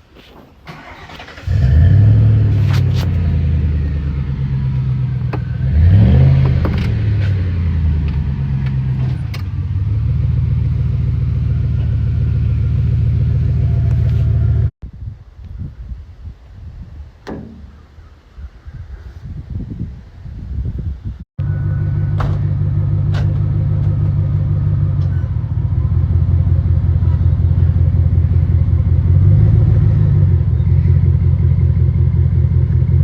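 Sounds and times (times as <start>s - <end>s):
car engine revving and idling: 0.8s - 14.7s, 21.4s - 33.0s.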